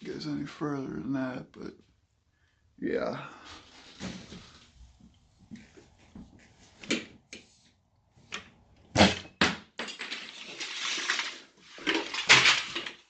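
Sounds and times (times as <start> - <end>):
rustling: 3.4 - 6.9.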